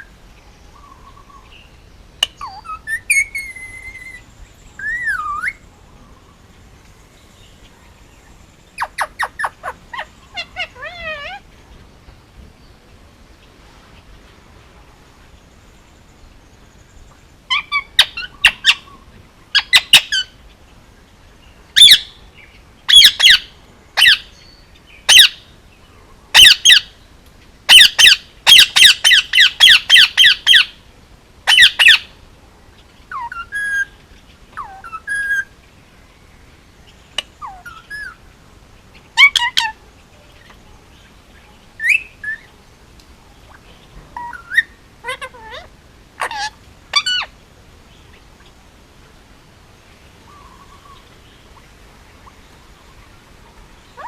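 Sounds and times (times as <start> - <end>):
parakeet squawking: 8.8 - 11.5, 26.4 - 26.8, 27.7 - 30.7, 31.5 - 32.0, 39.2 - 39.8, 44.2 - 47.3.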